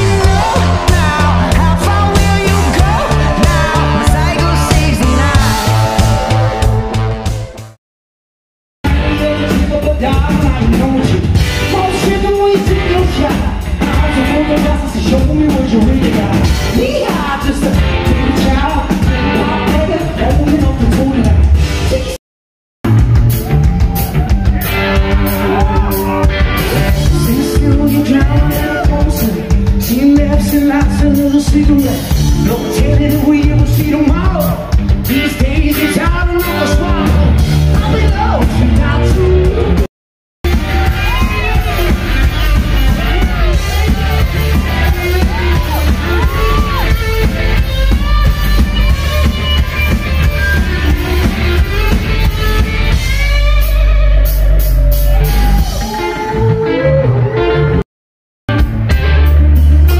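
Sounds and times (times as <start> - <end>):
person singing: 0.0 - 6.9, 25.3 - 39.9
live rock band playing: 0.0 - 7.8, 8.8 - 22.2, 22.9 - 57.8, 58.5 - 59.9.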